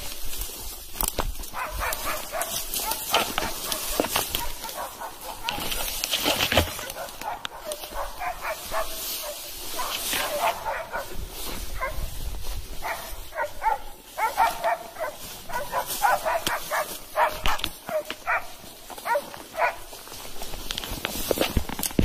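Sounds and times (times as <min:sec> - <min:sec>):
dog barking: 0:01.6 - 0:05.9, 0:06.7 - 0:11.2, 0:11.8 - 0:12.1, 0:12.8 - 0:19.9.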